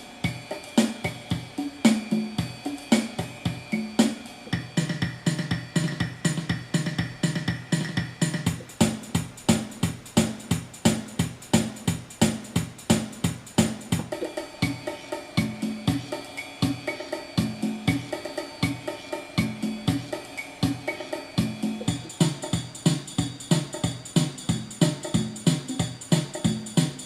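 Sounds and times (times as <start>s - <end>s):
drum kit pattern: 0.0s - 27.0s
held keyboard chords: 0.0s - 27.0s
bass notes: 21.4s - 25.9s.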